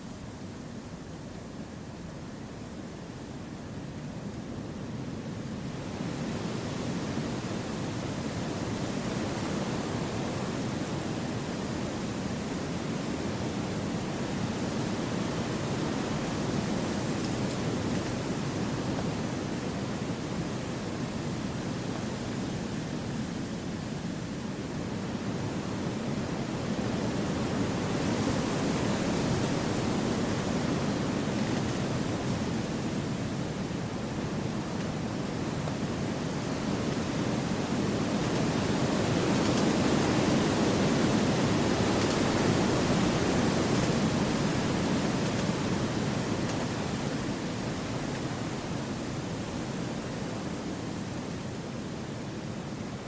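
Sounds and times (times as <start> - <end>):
wind rushing through trees: 0.0 - 53.0.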